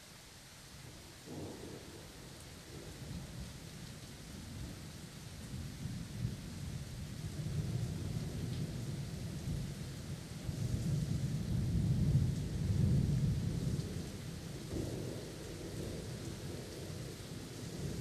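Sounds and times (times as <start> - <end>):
steady rain: 0.0 - 18.0.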